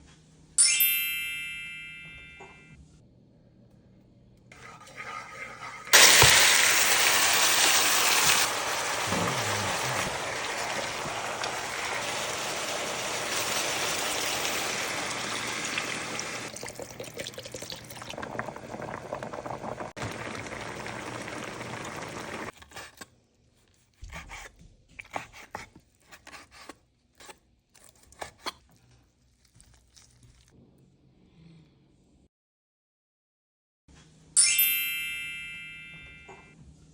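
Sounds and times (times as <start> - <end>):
chime ding: 0.6 - 2.8, 34.4 - 36.6
water running: 4.6 - 22.5.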